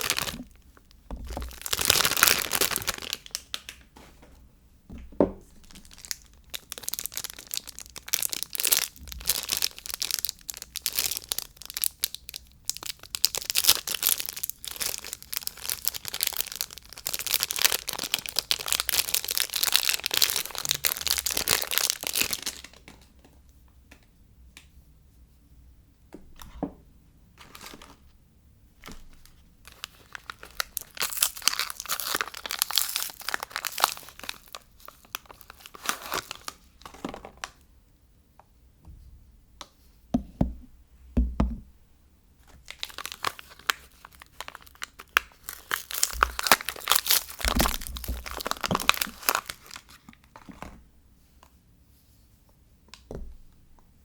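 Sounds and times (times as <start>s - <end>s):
packaging crinkling and tearing: 0.0s - 3.8s, 5.5s - 23.1s, 27.4s - 28.1s, 28.8s - 37.6s, 42.4s - 50.7s.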